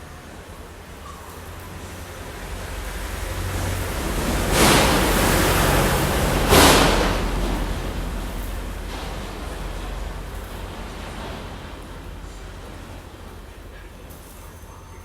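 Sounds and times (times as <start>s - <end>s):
rushing air: 2.4s - 13.0s
loud hissing blasts: 2.6s - 10.7s.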